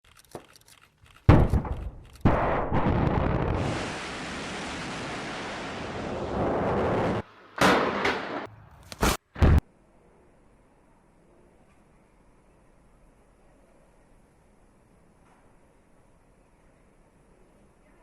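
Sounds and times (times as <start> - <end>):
thunder cracking and rumbling: 2.3 - 7.3.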